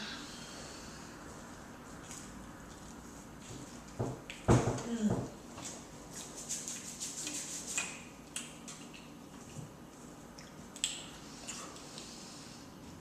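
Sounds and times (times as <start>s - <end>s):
chewing with wet smacks: 2.0s - 3.5s, 8.3s - 12.0s.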